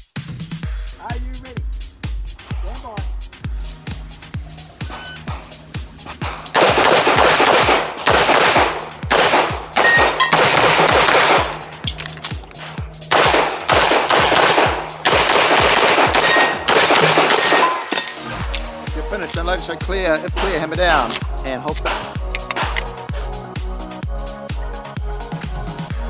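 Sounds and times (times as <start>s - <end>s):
background music with beat: 0.0s - 26.0s
rapid pistol fire: 6.2s - 18.6s, 21.8s - 23.0s.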